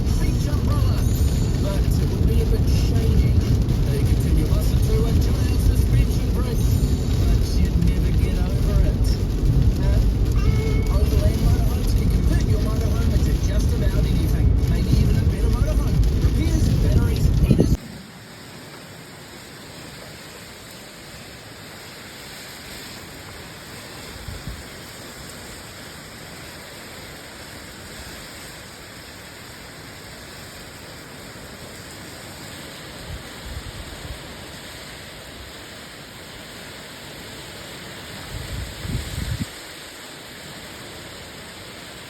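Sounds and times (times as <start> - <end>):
low rumbles: 0.0 - 18.1
heavy rain hissing: 0.0 - 42.0.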